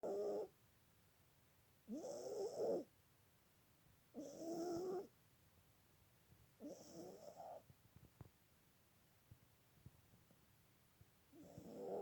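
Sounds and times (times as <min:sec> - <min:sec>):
cat snoring: 0:00.0 - 0:00.5, 0:01.9 - 0:02.9, 0:04.2 - 0:05.1, 0:06.6 - 0:07.6, 0:11.3 - 0:12.0.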